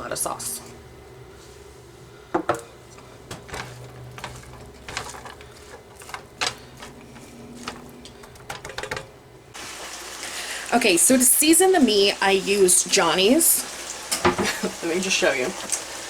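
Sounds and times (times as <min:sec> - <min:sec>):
utensils clicking against pan: 0:03.3 - 0:09.2.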